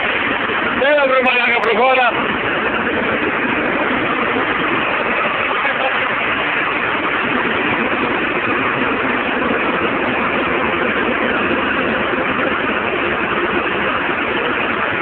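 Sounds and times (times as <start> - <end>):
diesel truck engine running: 0.0 - 15.0.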